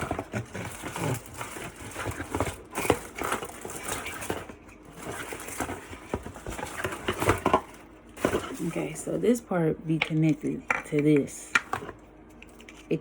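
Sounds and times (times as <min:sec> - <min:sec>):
wires rustling: 0:00.0 - 0:09.1.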